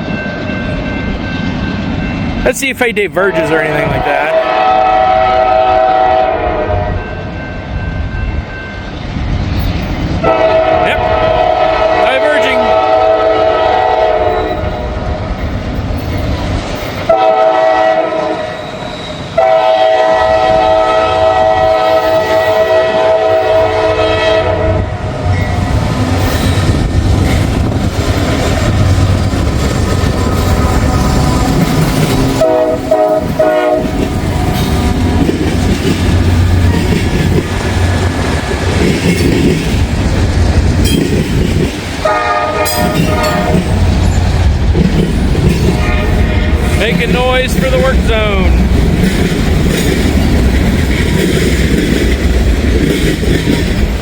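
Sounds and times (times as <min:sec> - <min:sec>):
train rumbling past: 0:00.0 - 0:54.0
locomotive air horn blasts: 0:04.3 - 0:07.0, 0:10.2 - 0:14.8, 0:17.1 - 0:18.6, 0:19.4 - 0:24.9, 0:32.3 - 0:34.0, 0:42.0 - 0:43.7, 0:45.8 - 0:46.7
train wheel clatter: 0:25.8 - 0:54.0.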